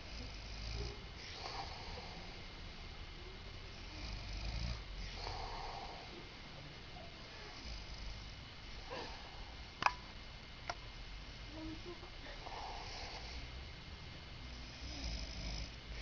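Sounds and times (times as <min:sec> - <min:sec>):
man snoring: 0:00.0 - 0:02.4, 0:03.7 - 0:06.2, 0:07.5 - 0:08.4, 0:12.4 - 0:13.5, 0:14.5 - 0:16.0.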